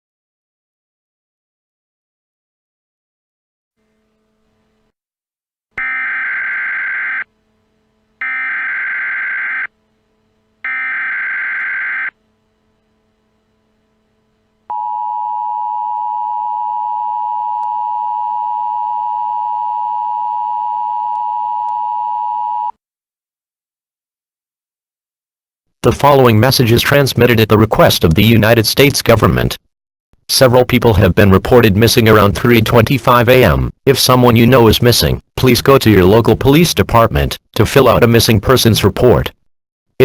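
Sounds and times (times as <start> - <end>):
two-tone attention signal: 5.8 - 7.3, 8.2 - 9.7, 10.7 - 12.1.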